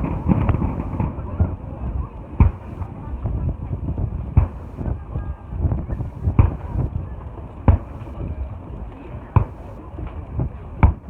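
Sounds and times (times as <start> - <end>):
fireworks bangs: 0.0 - 3.5, 4.1 - 8.4, 9.4 - 11.0
low rumble: 0.0 - 8.4.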